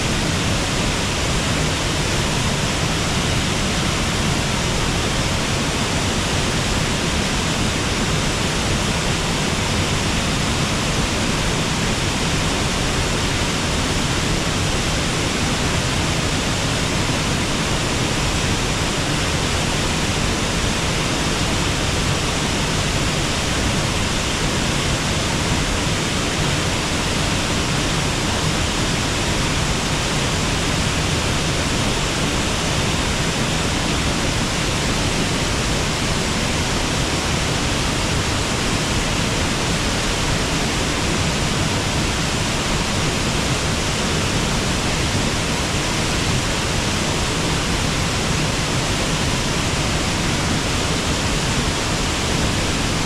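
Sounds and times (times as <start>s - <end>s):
water rushing over waterfall: 0.0s - 53.0s.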